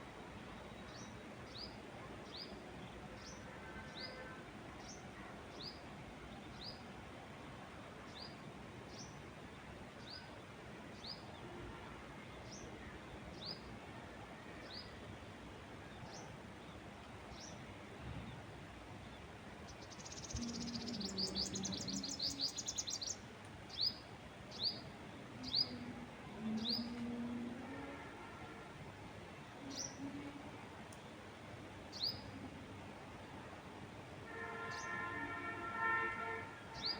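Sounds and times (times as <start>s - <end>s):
songbird chirping: 15.9s - 28.6s, 29.4s - 33.3s, 34.3s - 36.9s.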